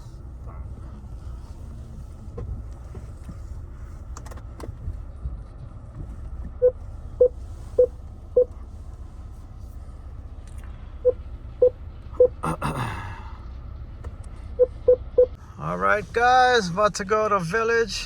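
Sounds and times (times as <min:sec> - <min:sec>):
car engine and cabin rumble: 0:00.0 - 0:18.0
dashboard warning chime beeps: 0:06.6 - 0:08.6, 0:11.0 - 0:12.4, 0:14.6 - 0:15.4.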